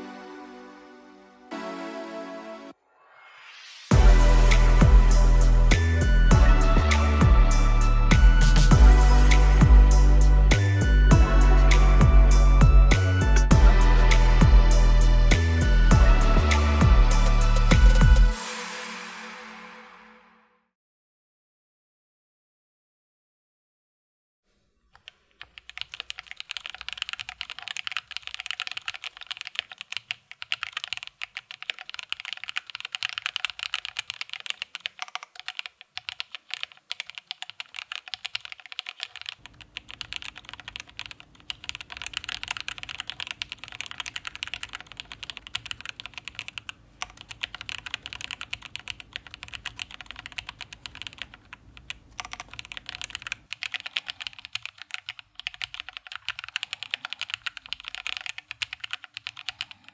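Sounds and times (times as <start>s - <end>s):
mechanical keyboard typing: 25.0s - 59.9s.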